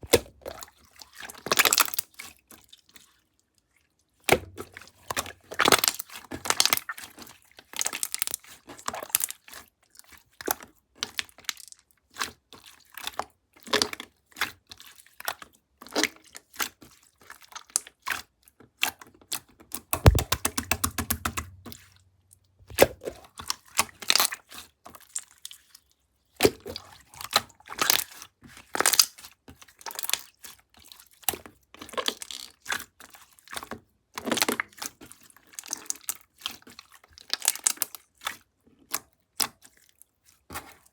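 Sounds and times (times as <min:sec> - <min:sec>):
low thump: 0:20.1 - 0:21.7.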